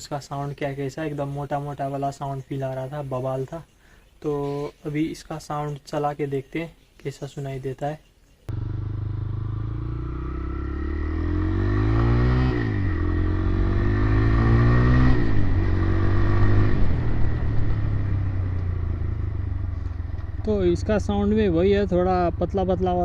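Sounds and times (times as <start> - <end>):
motorcycle engine revving: 8.5 - 23.0.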